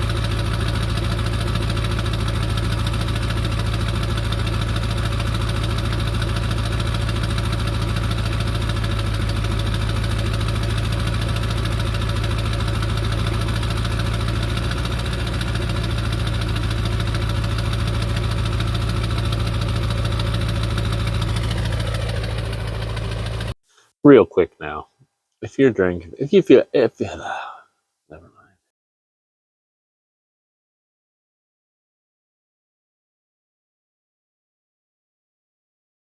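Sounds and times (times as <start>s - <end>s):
diesel engine idling: 0.0s - 23.6s.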